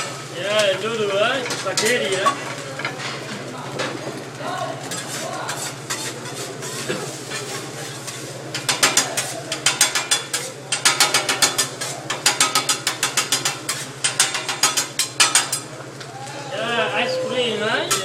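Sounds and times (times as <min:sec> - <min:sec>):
metal spatula clacking on griddle: 0:00.5 - 0:03.2, 0:04.9 - 0:15.7, 0:17.8 - 0:18.0.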